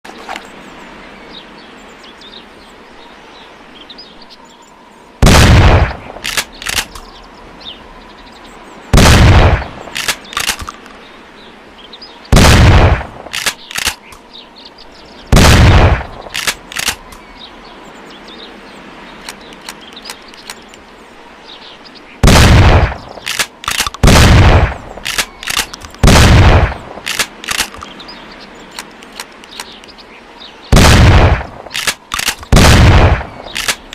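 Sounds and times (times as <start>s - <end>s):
shotgun shots: 5.2s - 6.9s, 8.9s - 10.7s, 12.3s - 14.0s, 15.3s - 17.0s, 22.2s - 27.8s, 30.7s - 33.9s
shotgun pump clicks: 6.2s - 7.1s, 9.9s - 10.9s, 13.3s - 14.2s, 16.3s - 17.2s, 23.2s - 24.0s, 25.0s - 26.0s, 27.0s - 28.0s, 28.7s - 29.9s, 31.7s - 32.5s, 33.4s - 33.9s.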